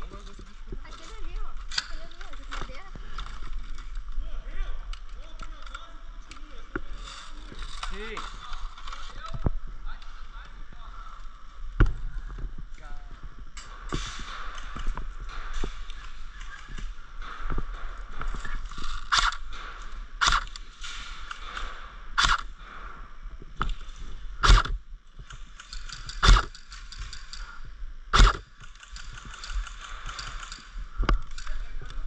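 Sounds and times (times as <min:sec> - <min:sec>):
airsoft gun pops: 0:24.4 - 0:24.8, 0:25.9 - 0:26.6, 0:28.2 - 0:28.4.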